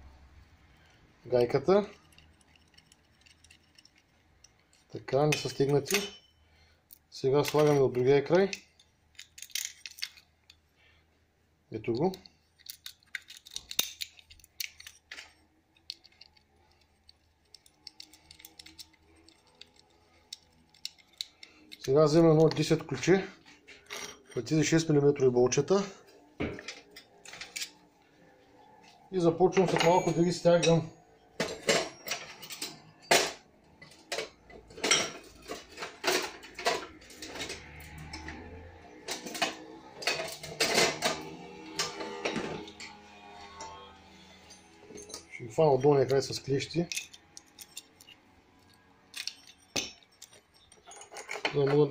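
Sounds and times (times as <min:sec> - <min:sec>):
metal parts clinking on pulley: 0:01.6 - 0:10.6, 0:11.9 - 0:23.0, 0:26.6 - 0:27.9, 0:29.5 - 0:51.9
small metal bolts clicking: 0:01.7 - 0:06.3, 0:06.9 - 0:10.6, 0:11.9 - 0:23.0, 0:44.4 - 0:51.9.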